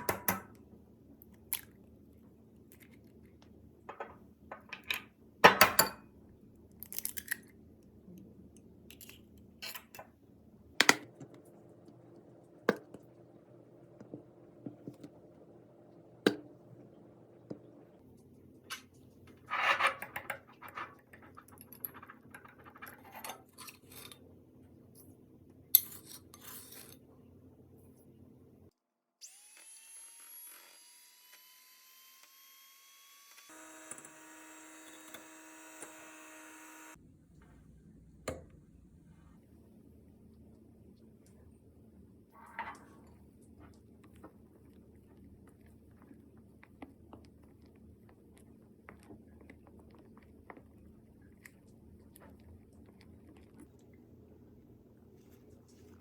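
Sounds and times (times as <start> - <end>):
faint steady hum: 33.5 - 56.0.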